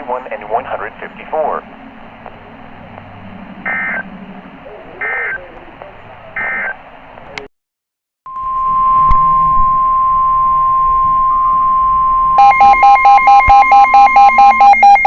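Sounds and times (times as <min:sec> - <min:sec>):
steady warning alarm tone: 0:03.0 - 0:04.1, 0:08.3 - 0:15.0
digital data tones: 0:03.6 - 0:04.0, 0:12.4 - 0:15.0
pulsing electronic beep alarm: 0:03.7 - 0:04.0, 0:08.3 - 0:15.0.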